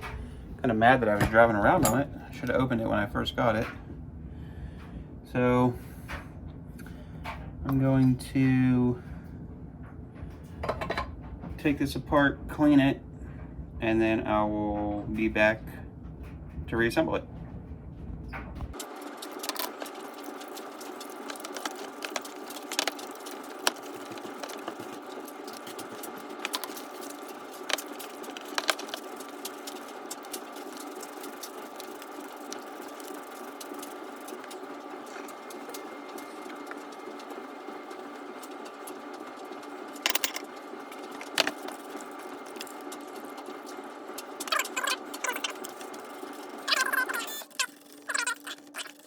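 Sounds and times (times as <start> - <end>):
mechanical hum: 0.0 - 49.0
tools and metal parts clinking: 40.0 - 40.5.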